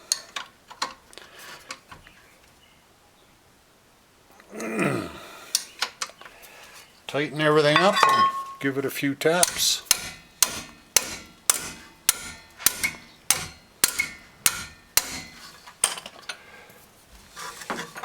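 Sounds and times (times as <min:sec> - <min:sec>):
hammer tapping metal: 0:07.8 - 0:08.7, 0:09.4 - 0:15.4.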